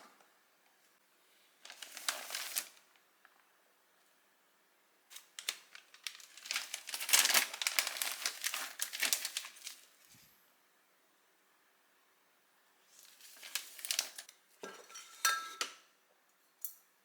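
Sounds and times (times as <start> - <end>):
packaging crinkling and rustling: 1.6 - 3.0, 5.1 - 10.1, 12.9 - 14.3.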